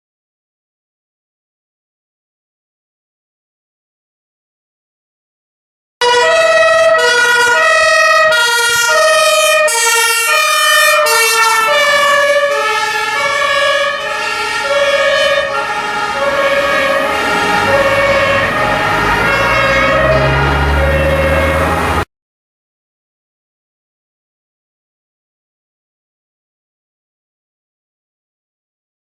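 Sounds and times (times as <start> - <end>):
two-tone emergency siren: 6.0 - 22.1.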